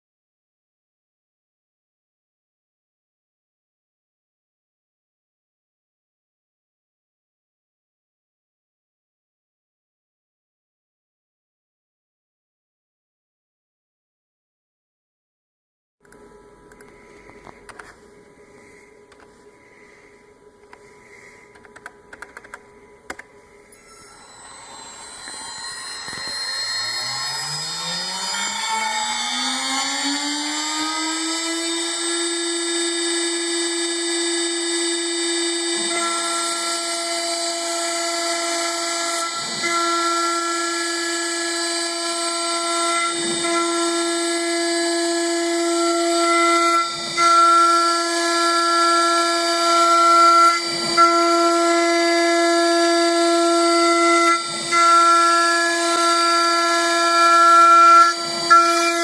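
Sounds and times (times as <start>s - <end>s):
machining spindle whining: 16.1s - 59.0s
tool cutting foam: 20.8s - 59.0s.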